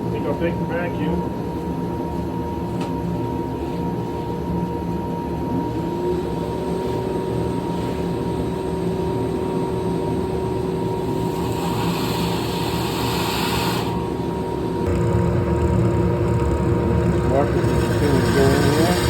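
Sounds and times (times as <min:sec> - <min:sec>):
shop vacuum running with whine: 0:00.0 - 0:19.0
rushing hiss of air and shavings: 0:10.9 - 0:14.4, 0:17.4 - 0:19.0.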